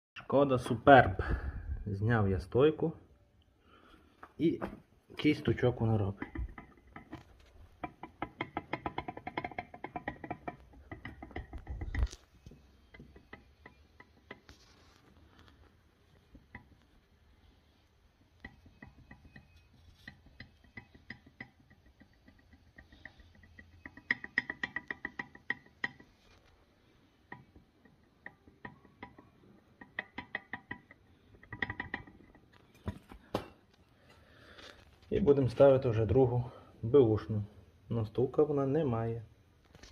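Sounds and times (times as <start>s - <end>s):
shock absorber knocking: 6.0s - 14.5s, 16.2s - 16.9s, 18.2s - 26.3s, 27.3s - 33.6s.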